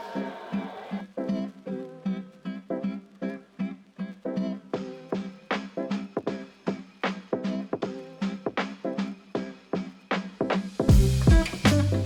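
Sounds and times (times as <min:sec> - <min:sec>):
plucked guitar music: 0:10.9 - 0:12.0.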